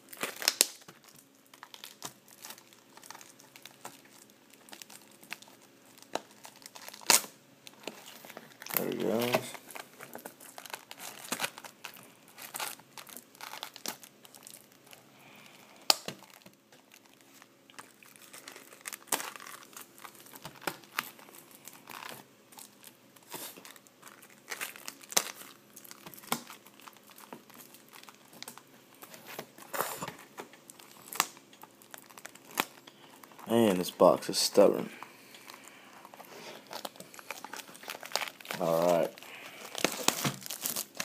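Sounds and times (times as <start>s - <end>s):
plastic wrap crinkling: 0.0s - 41.0s.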